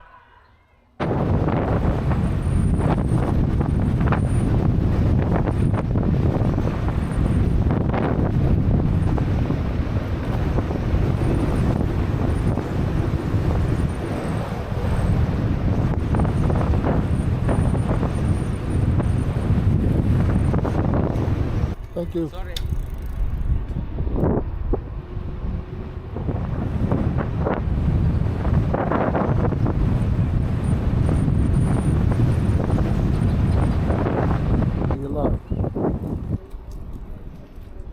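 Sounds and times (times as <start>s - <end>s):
wind buffeting microphone: 1.0s - 37.9s.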